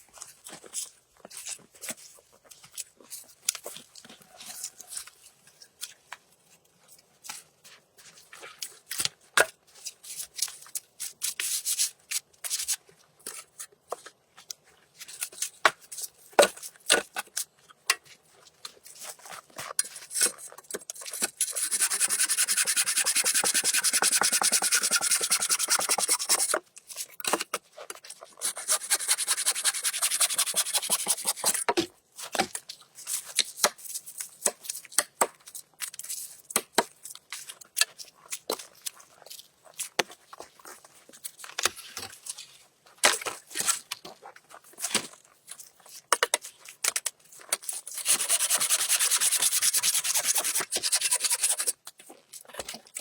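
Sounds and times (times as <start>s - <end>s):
handsaw cutting wood: 21.4s - 26.6s, 28.4s - 31.6s, 48.0s - 51.7s.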